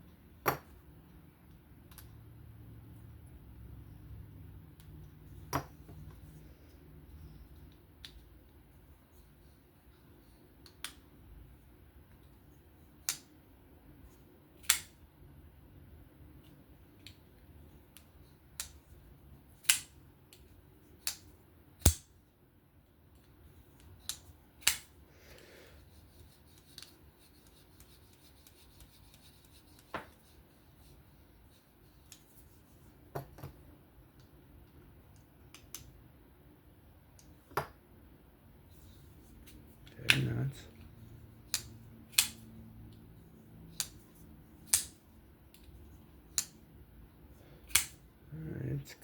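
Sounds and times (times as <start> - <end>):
metallic clicks and snaps: 47.7 - 48.0.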